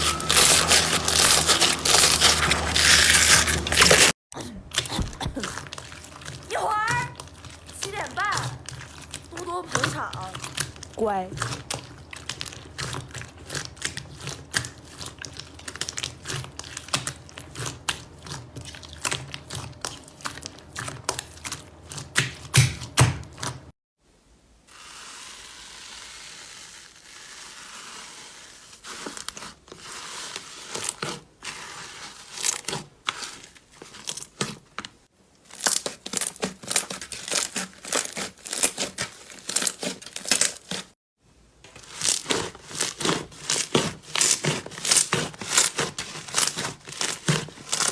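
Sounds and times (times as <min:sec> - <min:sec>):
slime crackling and popping: 0:00.0 - 0:04.1, 0:35.4 - 0:40.9.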